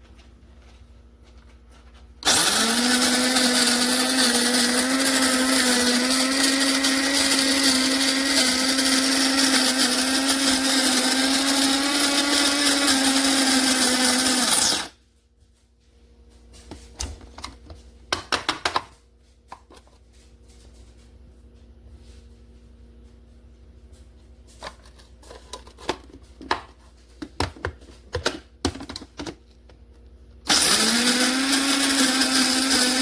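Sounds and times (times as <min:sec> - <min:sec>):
electric coffee grinder grinding: 0:02.2 - 0:14.9, 0:30.5 - 0:33.0.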